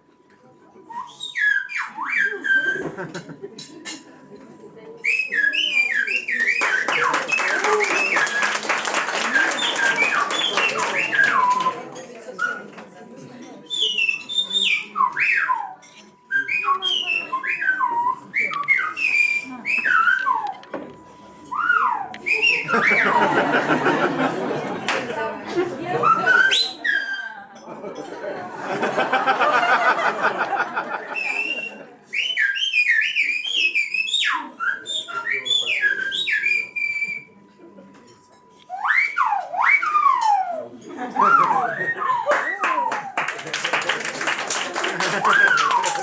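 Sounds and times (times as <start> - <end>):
whistled phrases: 0.8 - 3.0, 5.0 - 12.8, 13.6 - 23.8, 25.9 - 27.5, 31.0 - 37.4, 38.6 - 46.0
man whistling speech: 32.2 - 37.4.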